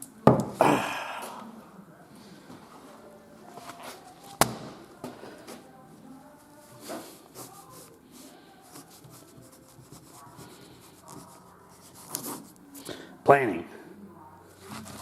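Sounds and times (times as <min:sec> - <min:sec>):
pencil scratching on paper: 0:06.6 - 0:12.6.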